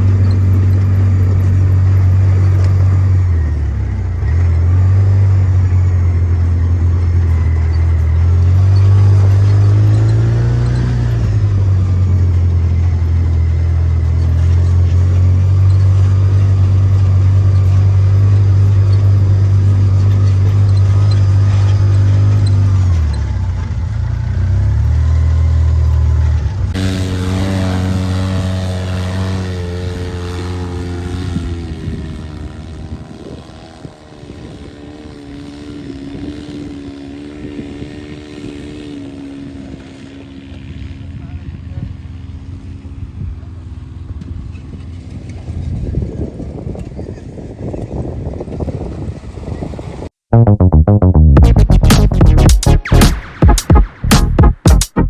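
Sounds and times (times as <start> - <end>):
vehicle engine running: 0.0 - 49.7, 50.4 - 55.0
high tonal drone: 26.8 - 30.7.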